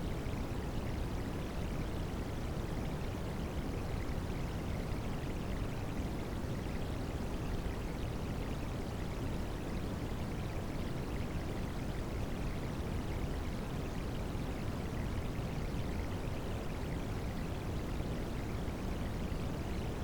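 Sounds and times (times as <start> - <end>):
white noise: 0.0 - 2.7.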